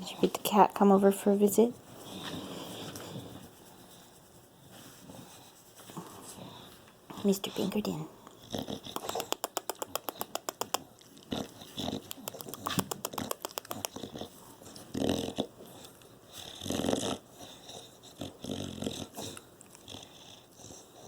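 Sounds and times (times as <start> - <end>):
dog breathing heavily: 1.9 - 3.5
dog mouth clicking: 8.8 - 14.2.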